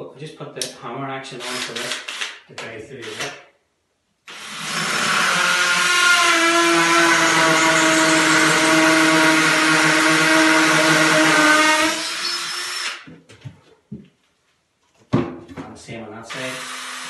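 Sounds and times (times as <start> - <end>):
hammer drill drilling into brick: 4.3 - 13.0, 16.4 - 17.0.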